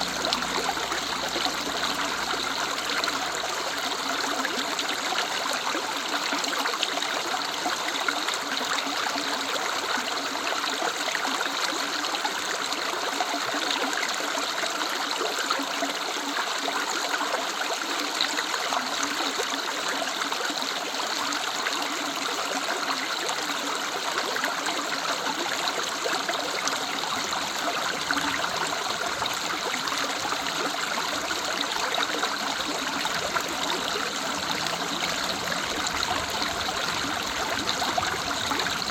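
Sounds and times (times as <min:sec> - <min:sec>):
river running over stones: 0:00.0 - 0:38.9.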